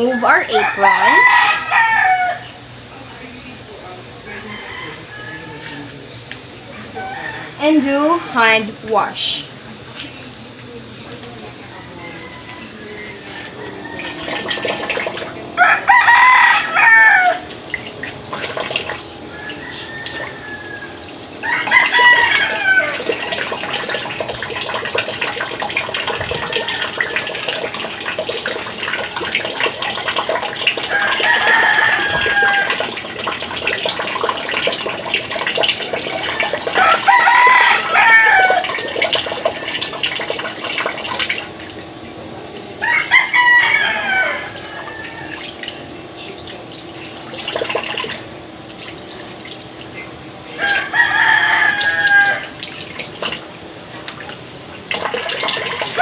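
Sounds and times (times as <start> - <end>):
rooster crowing: 0.3 - 2.6, 4.2 - 6.0, 6.7 - 8.4, 11.6 - 17.6, 18.3 - 41.4, 42.8 - 46.0, 50.5 - 53.4, 55.0 - 56.0
tap running: 12.4 - 16.5, 17.3 - 50.0, 50.6 - 56.0
water splashing on hands: 51.8 - 56.0.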